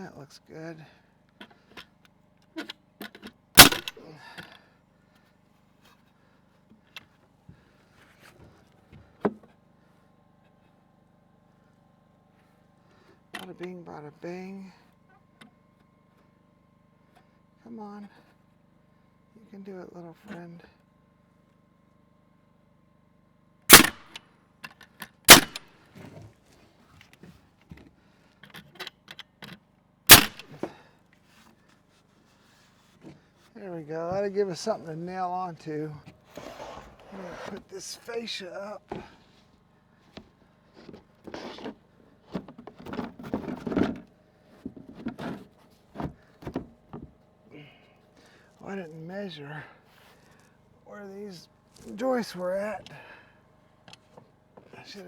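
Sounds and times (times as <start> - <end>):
hammer banging nails into wood: 3.6 - 3.9, 23.7 - 24.1, 25.3 - 25.6
loud crack of wood: 3.6 - 4.0, 23.7 - 24.2, 25.3 - 25.6, 30.1 - 30.7.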